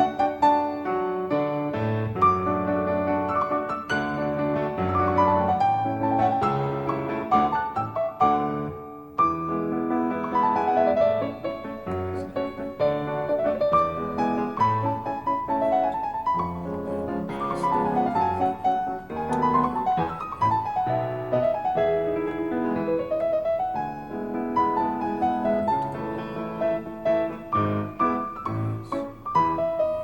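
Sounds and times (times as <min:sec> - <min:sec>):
piano music: 0:00.0 - 0:30.0.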